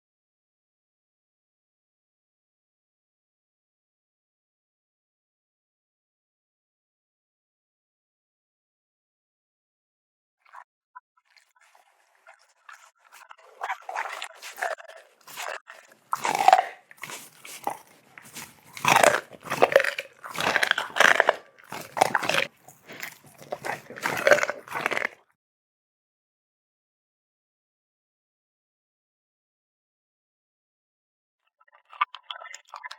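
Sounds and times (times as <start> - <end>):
pet chewing and crunching food: 11.3 - 25.2.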